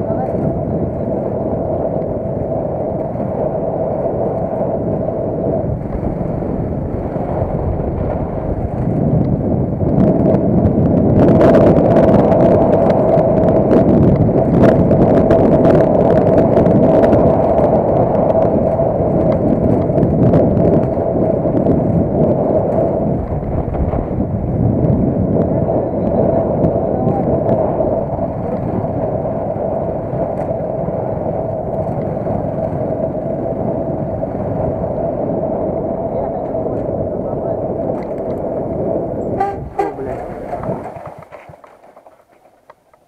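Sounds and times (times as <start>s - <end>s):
vehicle engine humming: 37.4s - 43.0s.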